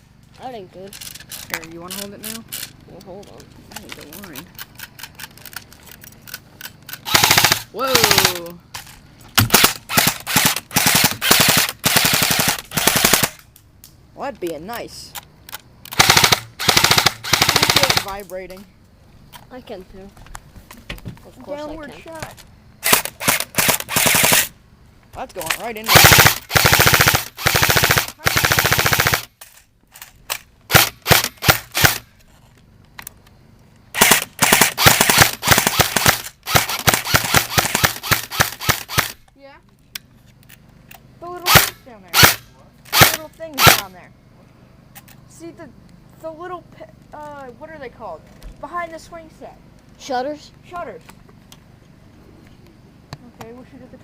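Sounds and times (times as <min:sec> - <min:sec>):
airsoft gun firing bursts: 0:07.0 - 0:08.5, 0:09.4 - 0:13.4, 0:15.9 - 0:18.2, 0:22.8 - 0:24.5, 0:25.8 - 0:29.3, 0:30.7 - 0:32.1, 0:34.0 - 0:39.2, 0:41.5 - 0:43.9.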